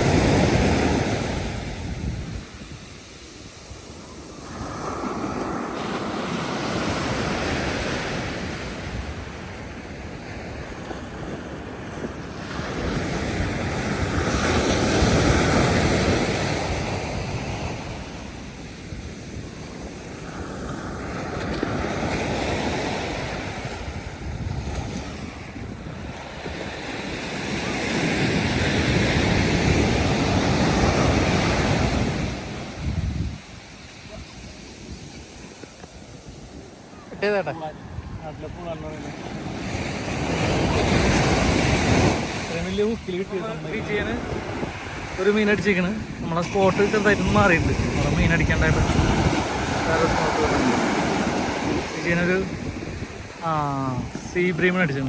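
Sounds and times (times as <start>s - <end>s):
wind buffeting microphone: 0.0s - 5.8s, 23.0s - 55.0s
sea waves breaking on beach: 0.0s - 55.0s.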